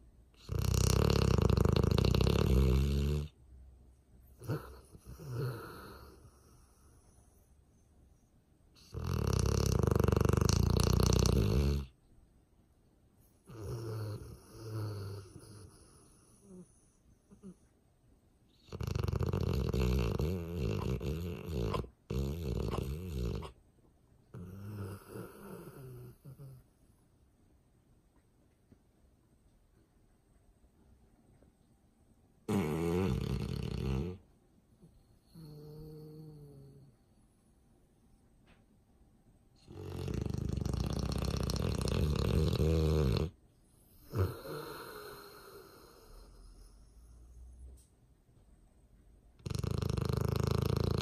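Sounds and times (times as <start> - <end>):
dog snoring: 0.4 - 3.4, 4.3 - 7.5, 8.8 - 12.0, 13.4 - 17.6, 18.6 - 23.6, 24.3 - 26.6, 32.5 - 34.2, 35.2 - 36.9, 39.6 - 47.7, 49.4 - 51.0.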